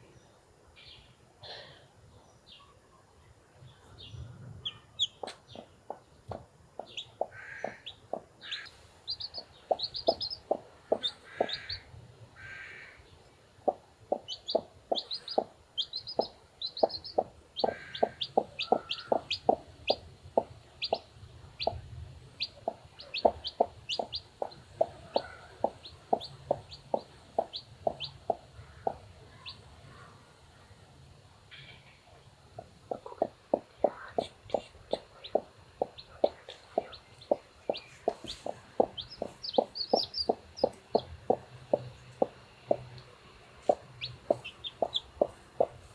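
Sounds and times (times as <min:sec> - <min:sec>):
chicks peeping: 0:04.6 - 0:11.9, 0:13.6 - 0:29.7, 0:32.5 - 0:45.9
hen clucking softly: 0:04.6 - 0:13.0, 0:13.6 - 0:21.8, 0:22.4 - 0:30.1, 0:32.6 - 0:45.9.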